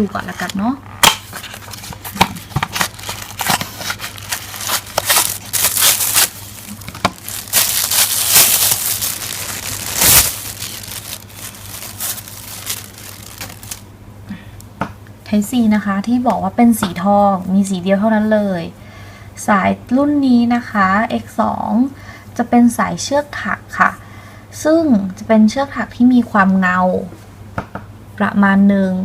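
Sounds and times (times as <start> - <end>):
packaging crinkling and tearing: 1.0 - 13.9.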